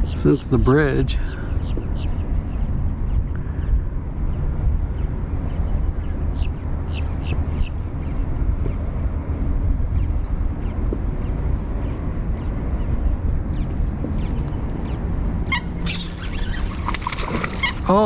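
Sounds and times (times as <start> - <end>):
steady low rumble: 0.0 - 18.0
bird harsh high calls: 15.5 - 18.0.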